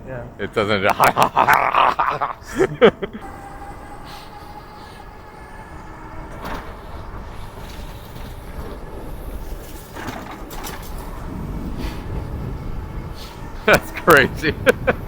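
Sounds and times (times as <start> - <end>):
faint motor whine: 0.0 - 15.0
wind and rolling rumble: 0.0 - 15.0.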